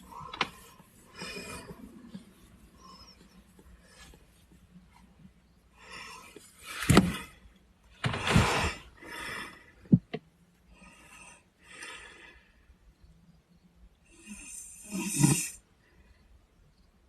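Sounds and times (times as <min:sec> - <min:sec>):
boy snoring: 0:14.1 - 0:15.6.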